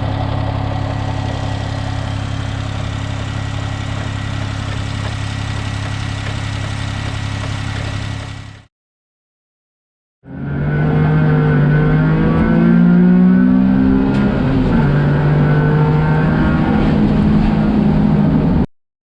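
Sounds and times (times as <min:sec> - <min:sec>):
small engine pulling under load: 0:00.0 - 0:08.7.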